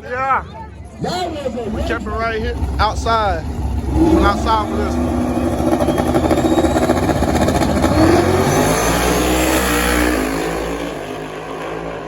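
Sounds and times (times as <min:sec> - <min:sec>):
high engine whine: 0:00.7 - 0:12.0
race cars accelerating: 0:01.0 - 0:12.0.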